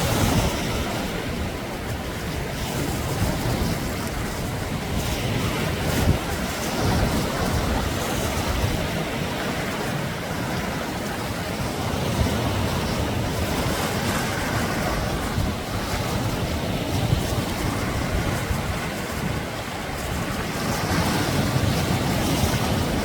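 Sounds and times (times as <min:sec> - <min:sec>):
waves breaking on beach: 0:00.0 - 0:23.0.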